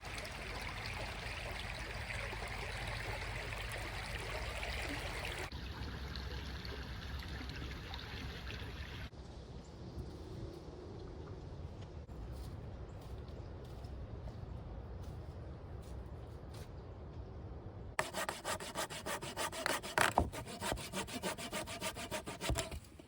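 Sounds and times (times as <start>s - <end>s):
stream water rushing: 0.0s - 5.5s.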